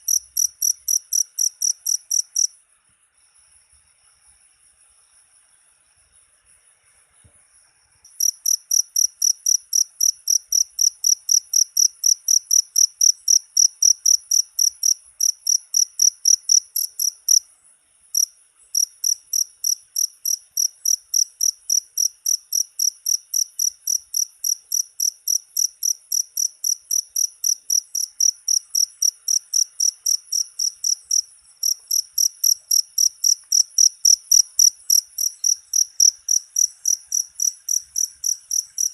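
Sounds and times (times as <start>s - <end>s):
cricket chirping: 0.0s - 38.9s.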